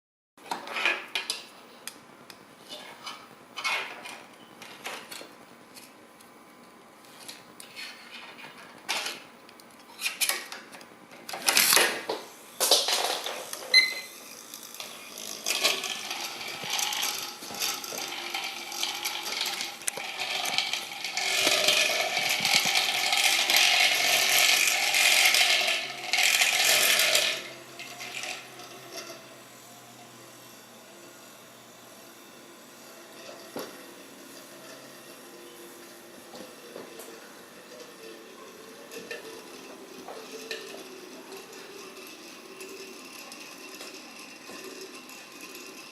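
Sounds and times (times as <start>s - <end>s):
gyroscope rattling: 12.6s - 29.4s, 36.2s - 45.9s.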